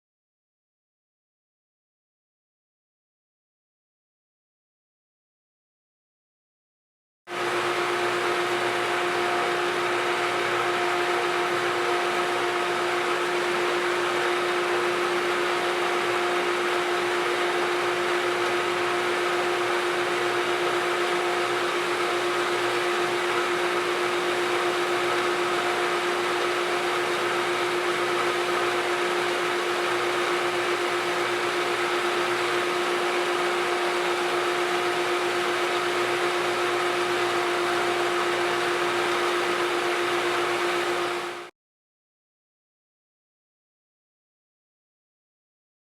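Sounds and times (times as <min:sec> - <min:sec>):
pump machinery hum and whine: 0:07.3 - 0:41.5.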